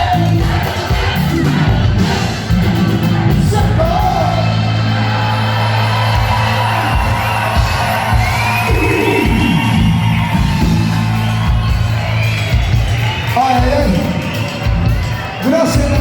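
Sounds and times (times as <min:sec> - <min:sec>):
live band playing cumbia: 0:00.0 - 0:05.4, 0:06.1 - 0:16.0
shouts and whoops: 0:04.0 - 0:16.0.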